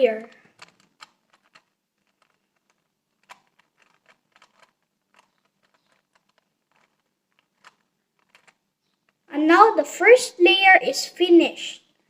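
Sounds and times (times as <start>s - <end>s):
puzzle cube plastic clicks: 0.0s - 9.3s.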